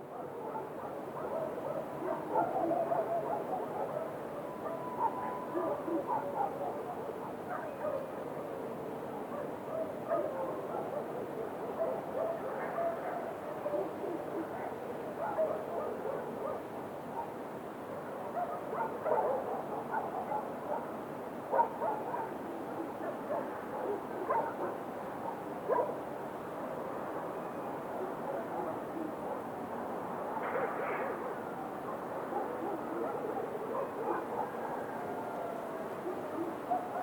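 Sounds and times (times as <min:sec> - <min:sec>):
dogs barking and yelping: 0:00.1 - 0:08.0, 0:09.3 - 0:16.6, 0:18.2 - 0:20.9, 0:21.5 - 0:26.0, 0:31.9 - 0:37.0.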